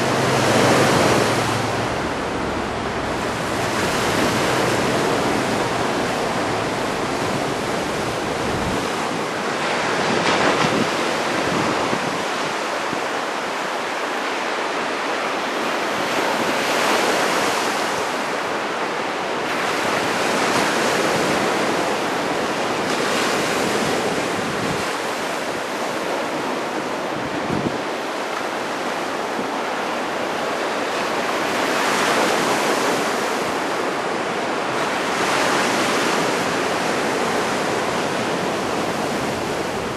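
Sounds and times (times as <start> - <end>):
wind buffeting microphone: 0.0 - 13.4, 26.4 - 28.7
heavy surf breaking waves: 0.0 - 39.9.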